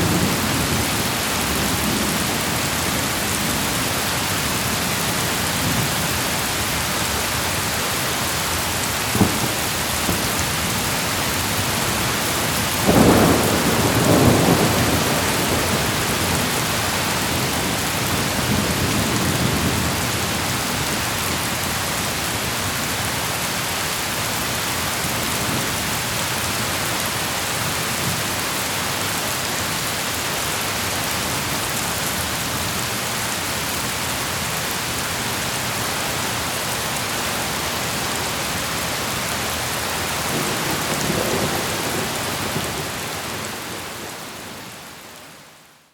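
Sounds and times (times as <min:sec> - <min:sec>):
heavy rain falling: 0:00.0 - 0:45.9
thunder crack: 0:09.1 - 0:11.0
rumbling thunderclap: 0:09.1 - 0:17.8, 0:40.3 - 0:44.0.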